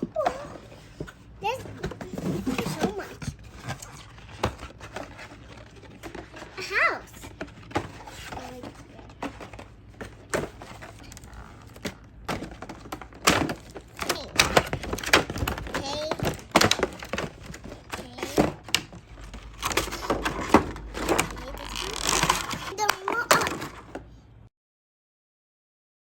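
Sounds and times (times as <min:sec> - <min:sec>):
plastic toy pieces clicking: 0:19.6 - 0:23.6.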